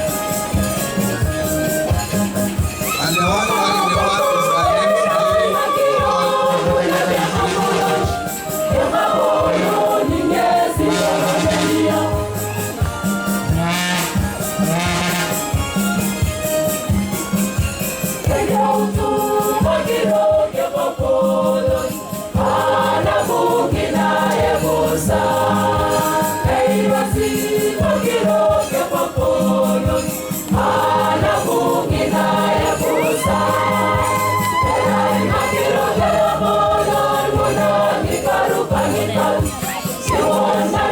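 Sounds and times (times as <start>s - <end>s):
shakers keeping a beat: 0.0s - 40.9s
church choir singing a hymn: 4.7s - 12.7s, 18.2s - 40.9s.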